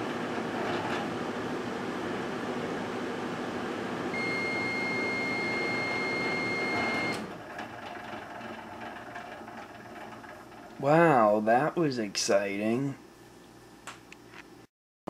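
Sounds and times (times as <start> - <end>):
microwave oven humming: 0.0 - 11.7
high steady beep: 4.2 - 7.2.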